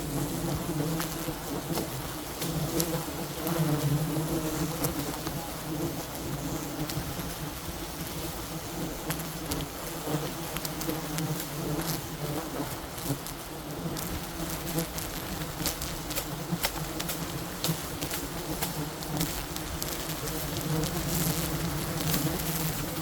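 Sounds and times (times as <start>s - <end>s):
bees buzzing: 0.0s - 23.0s
sharp clicks and crackles: 13.9s - 22.9s.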